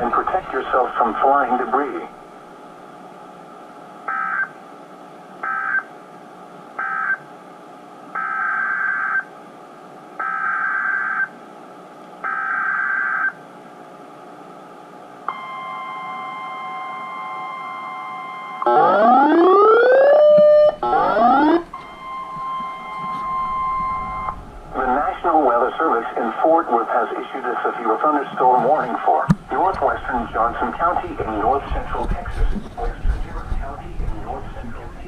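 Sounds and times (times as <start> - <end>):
steady high alarm tone: 5.4 - 5.8, 6.8 - 7.2, 8.2 - 9.3, 12.3 - 13.4, 15.3 - 26.2
rising siren-like sweep: 18.6 - 24.8.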